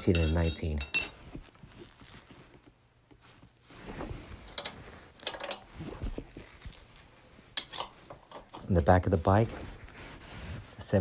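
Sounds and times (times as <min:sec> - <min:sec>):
metal wrenches clinking: 0:00.0 - 0:01.2
rustling: 0:00.0 - 0:11.0.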